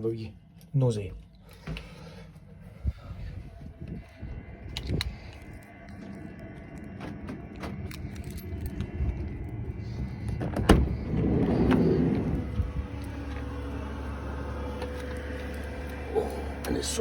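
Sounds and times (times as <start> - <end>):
sliding van door rolling: 10.4 - 15.4.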